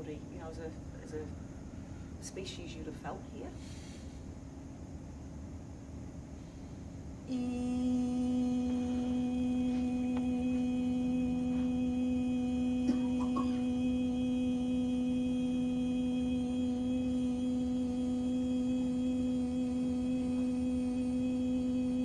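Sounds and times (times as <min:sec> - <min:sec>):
meditative low drone: 0:07.2 - 0:22.0.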